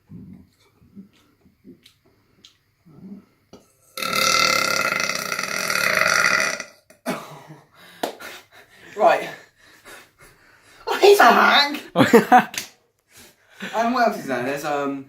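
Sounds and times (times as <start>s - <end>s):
person burping: 4.0s - 7.6s.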